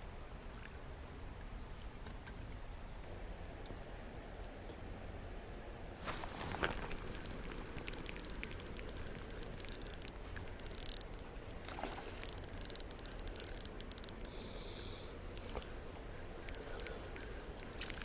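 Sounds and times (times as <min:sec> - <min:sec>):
fishing reel clicking rapidly: 0:06.9 - 0:11.2, 0:12.2 - 0:14.4, 0:16.5 - 0:17.7.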